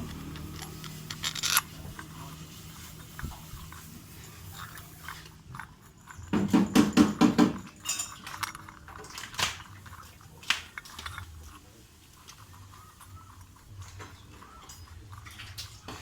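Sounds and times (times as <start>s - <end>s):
metal tool clinks: 6.0s - 8.7s
metallic knocks and rattles: 6.0s - 9.6s.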